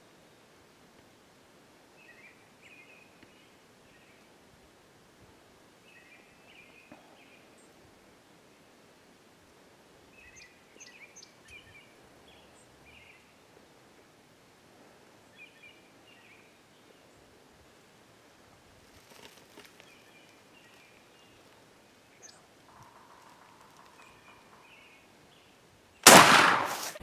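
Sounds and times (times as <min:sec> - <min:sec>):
brief rustle: 0:18.9 - 0:21.6, 0:26.4 - 0:27.0.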